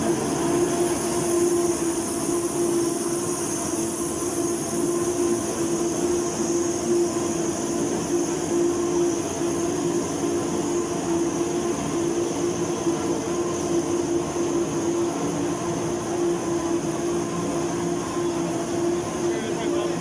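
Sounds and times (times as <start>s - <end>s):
factory machinery humming and whining: 0.0s - 20.0s.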